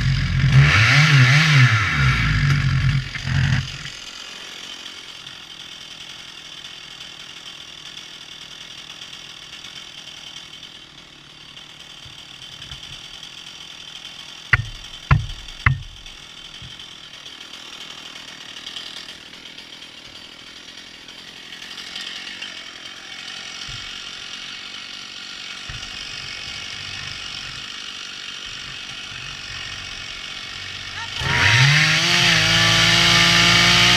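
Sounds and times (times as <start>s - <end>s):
chainsaw running: 0.0s - 33.9s
sharp knocks: 14.5s - 16.8s, 23.6s - 24.1s.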